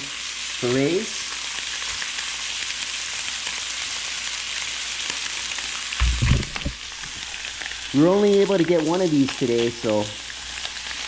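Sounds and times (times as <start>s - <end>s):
fish frying in butter: 0.0s - 11.0s
low thumps: 6.0s - 7.1s.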